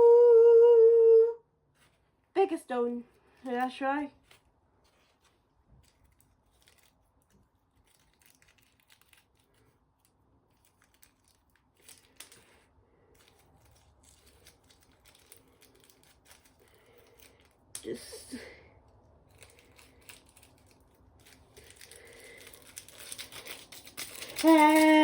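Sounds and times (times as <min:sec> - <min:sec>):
faint clicks and crackles: 0:03.1 - 0:25.0.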